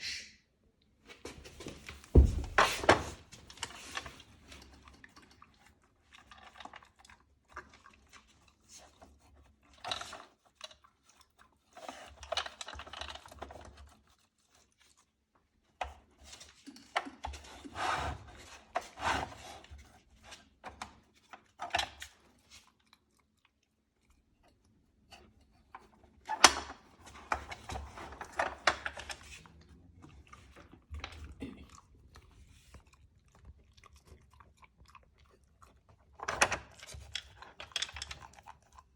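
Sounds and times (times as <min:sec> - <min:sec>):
puppy chewing treats: 0:26.8 - 0:38.9.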